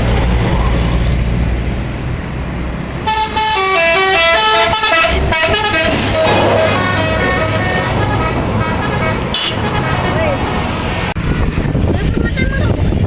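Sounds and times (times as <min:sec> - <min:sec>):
low bus engine running: 0:00.0 - 0:13.0
musical bus horn tune: 0:03.0 - 0:10.5.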